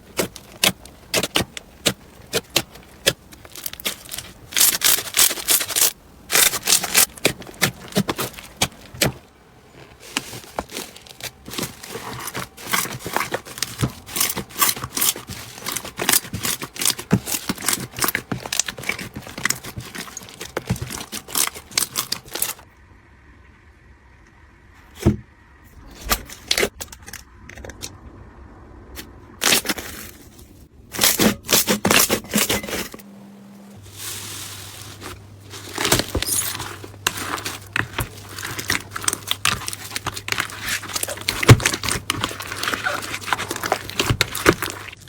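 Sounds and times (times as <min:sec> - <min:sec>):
slime crackling and popping: 0:00.0 - 0:09.2, 0:09.8 - 0:22.6, 0:34.3 - 0:45.0.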